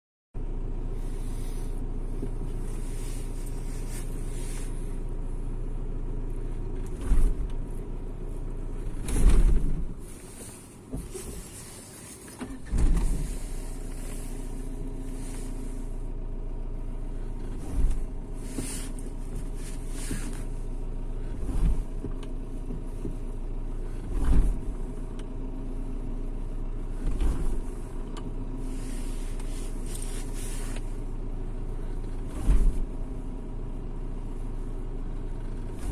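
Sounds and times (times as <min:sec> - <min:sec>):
diesel engine running: 0:00.4 - 0:35.9
loud clunks: 0:12.4 - 0:13.4.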